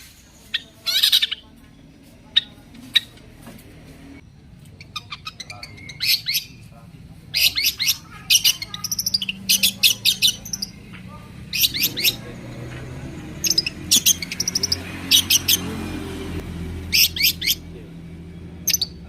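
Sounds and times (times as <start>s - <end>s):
bird calling in sharp notes: 7.3s - 12.3s.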